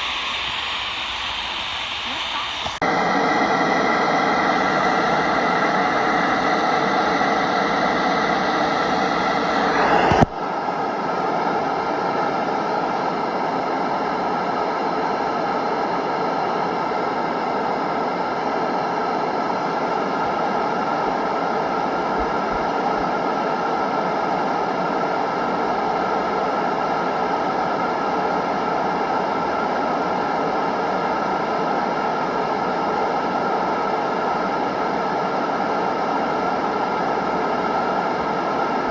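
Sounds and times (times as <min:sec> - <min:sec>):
radio static hiss: 0:00.0 - 0:29.6.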